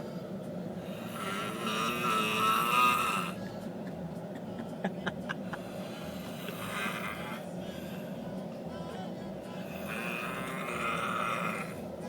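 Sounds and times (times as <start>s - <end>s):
man snoring: 0.8s - 3.4s, 5.6s - 8.0s, 9.6s - 11.9s.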